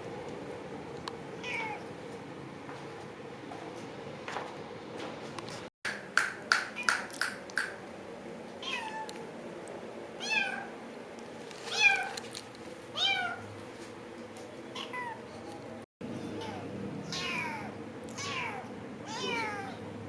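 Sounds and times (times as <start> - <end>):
cat meowing: 1.4 - 1.8, 16.3 - 19.8.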